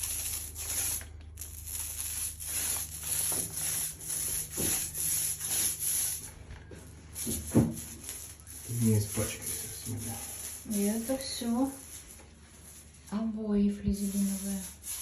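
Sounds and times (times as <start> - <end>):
paint roller rubbing on wall: 0.0 - 15.0.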